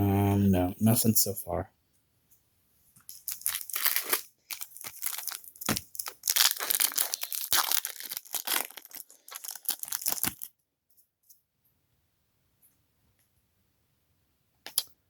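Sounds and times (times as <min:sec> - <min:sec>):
foil wrapper crinkling and tearing: 0:03.1 - 0:10.6.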